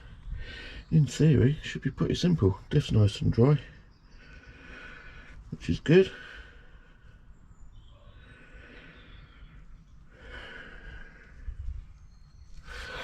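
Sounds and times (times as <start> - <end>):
man breathing: 0.0 - 0.9, 4.1 - 5.5, 6.1 - 7.4, 8.2 - 13.0.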